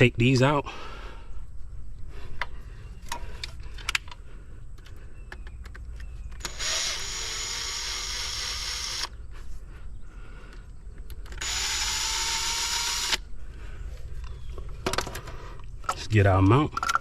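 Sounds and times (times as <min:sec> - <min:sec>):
handling clicks and taps: 0:04.8 - 0:06.4
cordless drill running: 0:06.4 - 0:09.1, 0:11.4 - 0:13.3.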